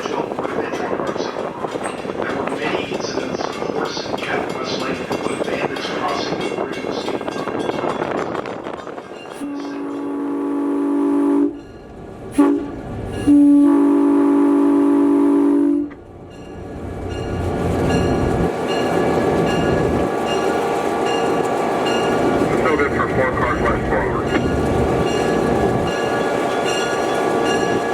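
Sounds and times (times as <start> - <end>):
train rumbling on rails: 0.0 - 27.9
locomotive horn blasts: 9.4 - 11.6, 12.4 - 16.0.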